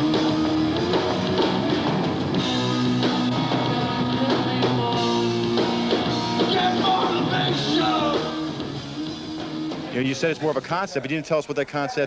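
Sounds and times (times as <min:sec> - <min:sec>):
electric guitar: 0:00.0 - 0:10.0
drum kit: 0:00.0 - 0:10.1
person singing: 0:02.4 - 0:09.2.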